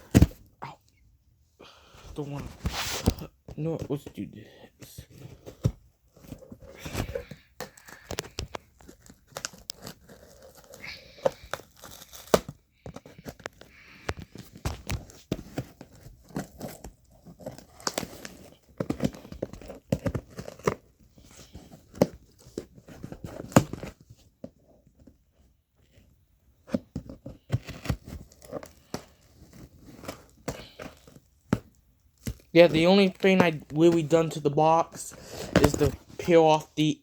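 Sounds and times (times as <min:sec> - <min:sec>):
cardboard crinkling and scraping: 0:01.9 - 0:37.0
packing tape peeling and tearing: 0:07.7 - 0:13.6.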